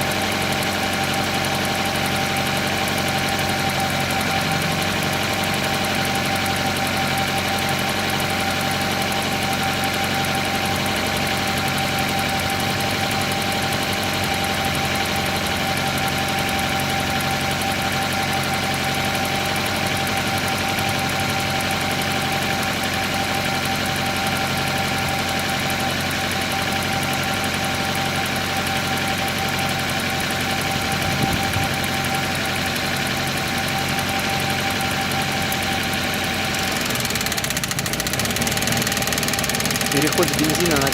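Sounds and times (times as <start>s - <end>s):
car engine idling with high whine: 0.0s - 40.9s
brief engine knock: 30.9s - 32.5s.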